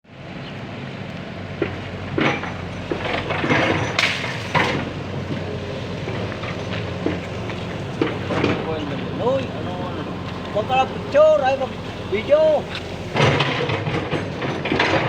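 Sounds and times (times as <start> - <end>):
excavator diesel engine running: 0.1 - 15.0
metallic clanks and scrapes: 2.2 - 4.9, 12.7 - 15.0.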